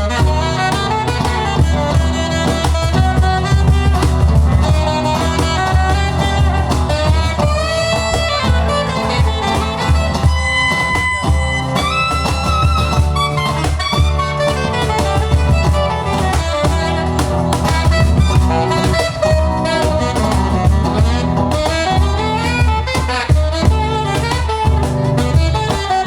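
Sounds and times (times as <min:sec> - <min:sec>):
bass: 0:00.0 - 0:26.0
drum beat: 0:00.0 - 0:26.0
lead instrument melody: 0:00.0 - 0:26.0.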